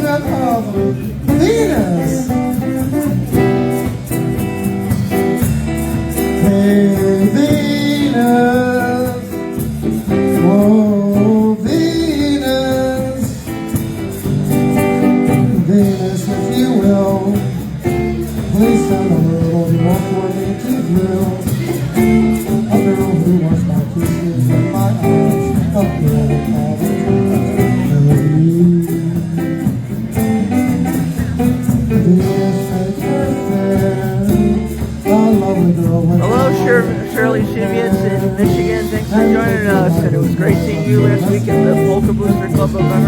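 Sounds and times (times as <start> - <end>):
guitar accompaniment: 0.0 - 43.0
polka band playing: 1.0 - 7.8, 29.0 - 43.0.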